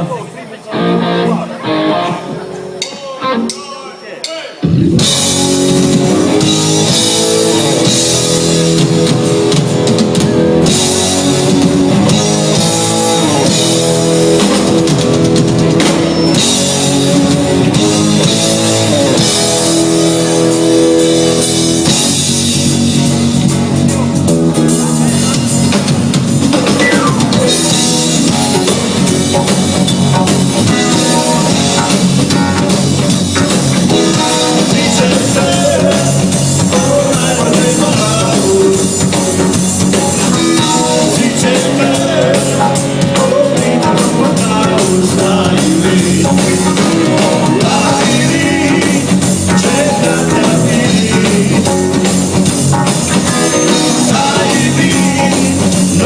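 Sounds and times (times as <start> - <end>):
rock band playing: 0.0 - 56.0
person singing: 33.9 - 52.2, 53.5 - 56.0.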